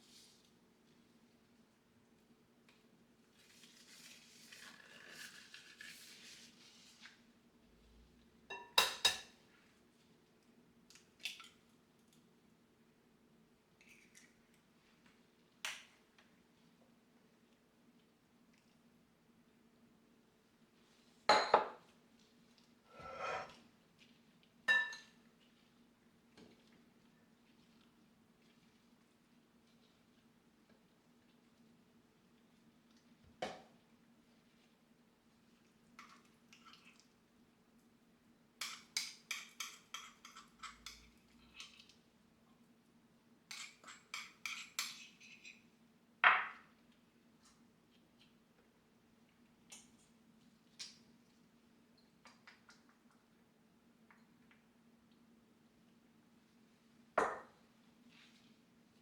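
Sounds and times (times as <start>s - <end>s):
dishes clinking: 8.5s - 9.3s, 21.3s - 21.8s, 24.7s - 25.1s
soft scrape: 22.9s - 23.6s.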